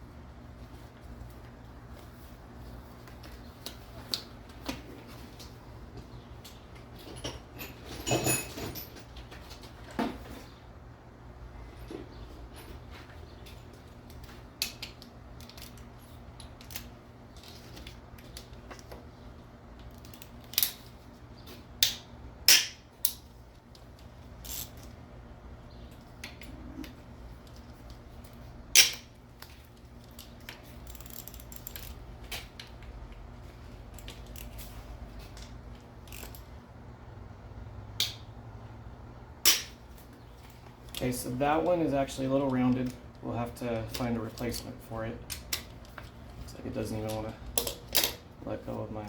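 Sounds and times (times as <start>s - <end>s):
steady low hum: 0.0s - 49.0s
hand tools clicking on metal: 28.8s - 32.7s, 39.4s - 39.8s.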